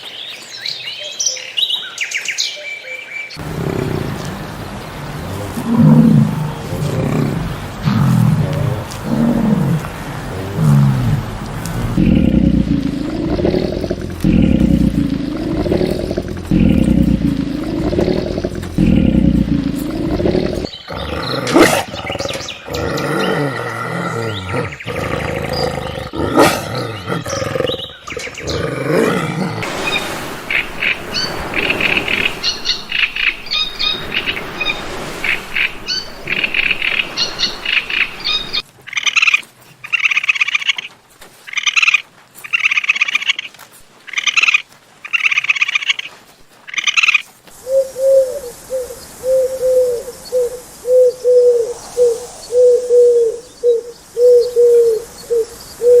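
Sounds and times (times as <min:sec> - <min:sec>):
birds chirping: 0:00.0 - 0:56.0
animal roaring: 0:03.4 - 0:30.4, 0:51.4 - 0:53.6
high animal calls: 0:03.4 - 0:40.9, 0:46.7 - 0:55.0
short low animal calls: 0:05.2 - 0:20.7.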